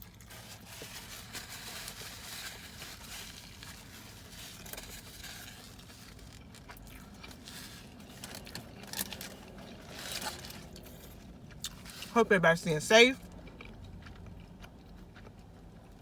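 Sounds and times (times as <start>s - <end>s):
chewing a sandwich: 0.0s - 16.0s.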